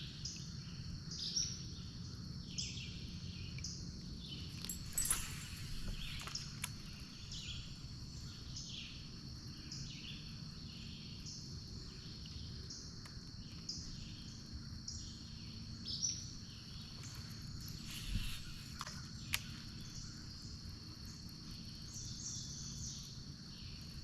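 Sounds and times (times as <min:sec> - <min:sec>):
insects singing in chorus: 0:00.0 - 0:24.0.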